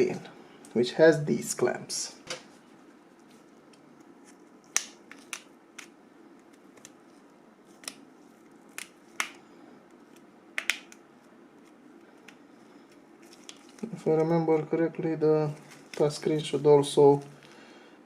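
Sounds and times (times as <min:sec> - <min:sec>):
plastic clips snapping: 0:10.2 - 0:11.0.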